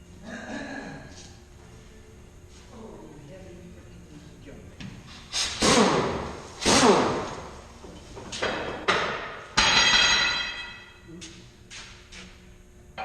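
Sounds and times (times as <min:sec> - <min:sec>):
metal clanks with ringing tone: 0:09.6 - 0:11.1.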